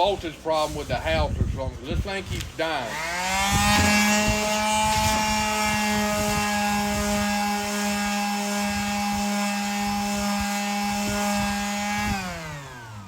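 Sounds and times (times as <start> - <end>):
electric sander whining: 2.8 - 13.0.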